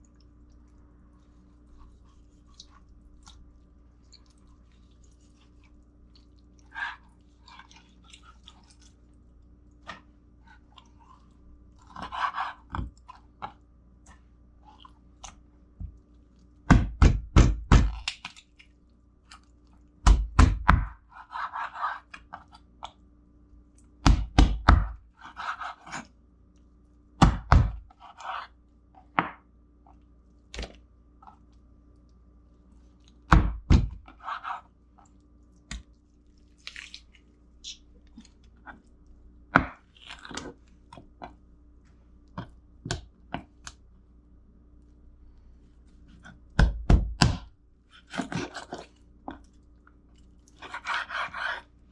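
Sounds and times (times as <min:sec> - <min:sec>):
knife chopping on cutting board: 0:16.7 - 0:18.0, 0:24.0 - 0:25.6, 0:27.2 - 0:27.8, 0:46.6 - 0:47.5.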